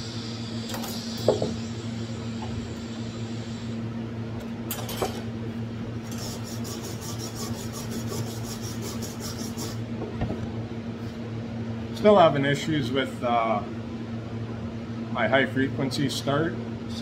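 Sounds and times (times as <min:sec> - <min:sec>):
welding machine electrical hum: 0:00.0 - 0:17.0.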